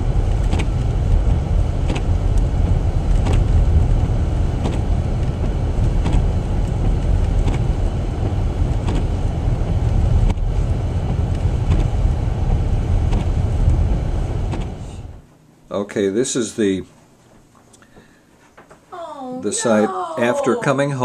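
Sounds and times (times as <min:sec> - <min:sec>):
car driving rumble from inside: 0:00.0 - 0:15.2.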